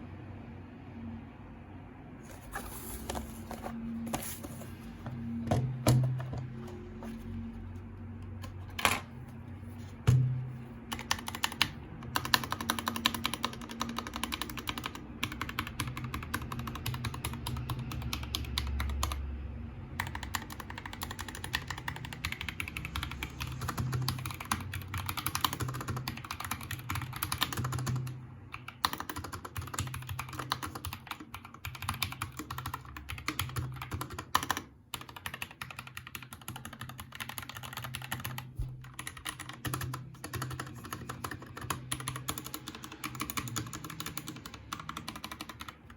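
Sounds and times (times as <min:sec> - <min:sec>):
mechanical keyboard typing: 0:10.9 - 0:19.3, 0:20.0 - 0:45.9.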